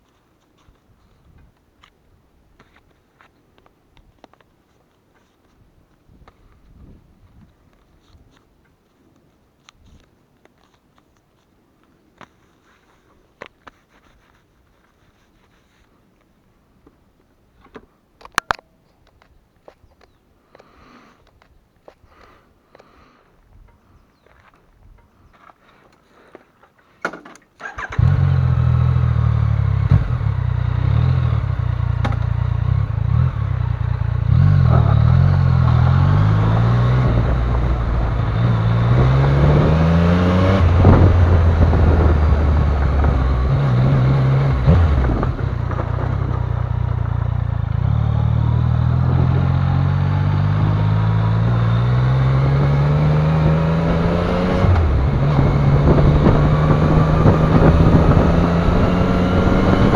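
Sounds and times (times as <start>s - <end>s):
motorcycle engine accelerating: 27.6s - 59.9s.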